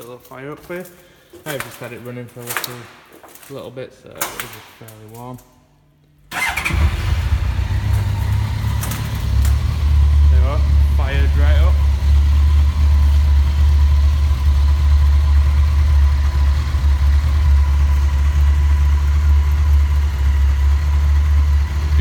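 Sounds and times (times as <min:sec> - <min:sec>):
motorcycle engine idling: 0:06.4 - 0:22.0.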